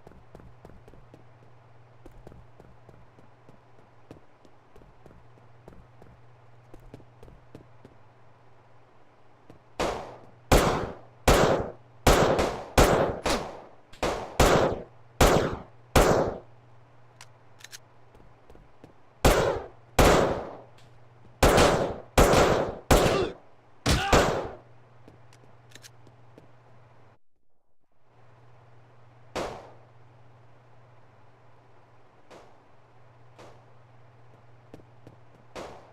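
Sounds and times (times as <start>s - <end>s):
faint low hum: 0.0s - 35.9s
sharp bangs: 9.8s - 16.5s, 19.2s - 20.7s, 21.4s - 24.6s, 29.3s - 29.8s, 35.5s - 35.9s.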